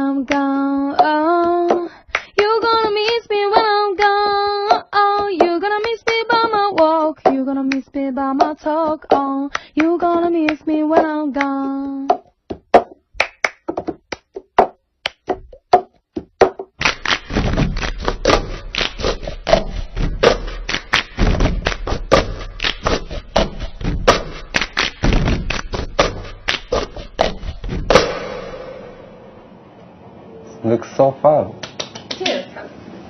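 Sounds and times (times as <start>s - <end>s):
hand claps: 8.4s - 28.2s, 31.6s - 32.4s.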